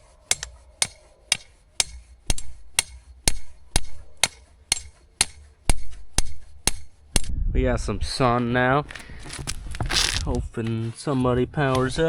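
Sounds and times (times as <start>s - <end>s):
hammer striking steel rod: 0.3s - 7.3s.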